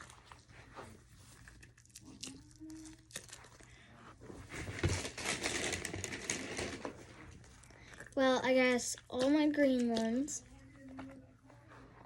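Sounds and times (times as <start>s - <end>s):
toys rustling and crinkling: 0.0s - 8.2s.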